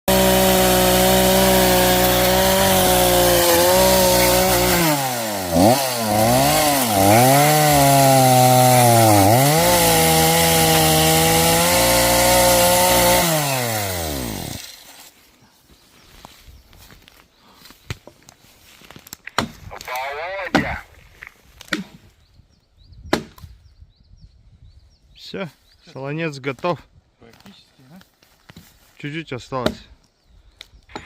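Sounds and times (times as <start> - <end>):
chainsaw cutting wood: 0.1 - 15.2.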